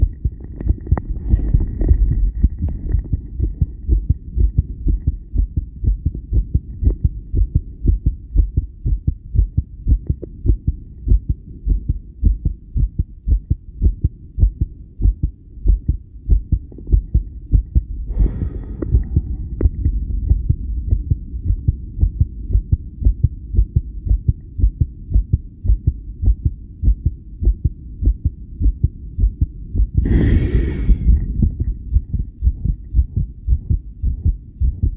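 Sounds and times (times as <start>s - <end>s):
heartbeat thumps: 0.0s - 34.9s
person breathing: 18.0s - 19.8s, 30.0s - 31.6s.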